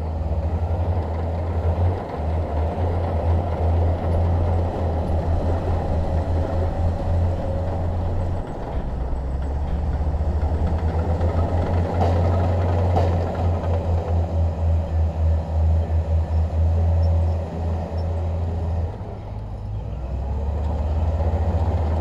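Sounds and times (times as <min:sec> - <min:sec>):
bulldozer diesel engine running: 0:00.0 - 0:22.0.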